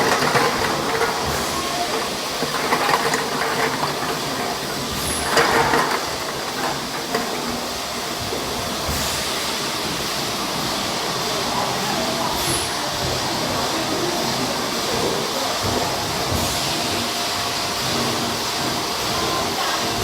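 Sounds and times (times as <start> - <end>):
machine clatter: 0.0 - 10.0
bottling machine running: 0.0 - 20.0.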